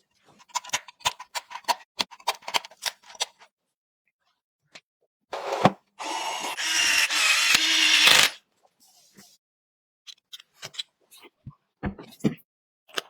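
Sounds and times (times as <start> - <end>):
short scrape: 5.4 - 5.8
electric screwdriver running: 5.4 - 8.4.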